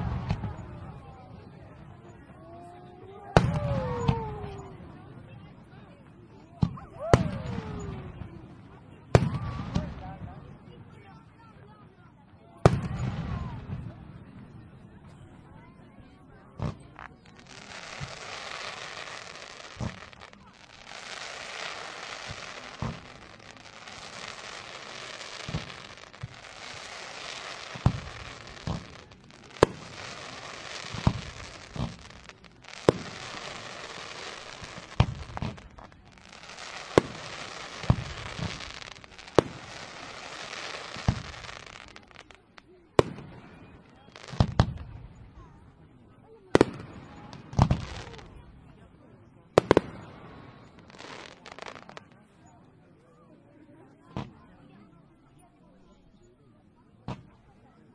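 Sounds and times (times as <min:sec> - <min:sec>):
fireworks loud bangs: 0:00.0 - 0:01.0, 0:03.4 - 0:04.7, 0:09.1 - 0:10.3, 0:12.6 - 0:14.6, 0:16.6 - 0:45.2, 0:46.5 - 0:48.4, 0:49.6 - 0:52.2
fireworks crackling: 0:00.0 - 0:01.8, 0:03.3 - 0:05.0, 0:16.6 - 0:45.4, 0:46.5 - 0:48.7, 0:49.6 - 0:52.2.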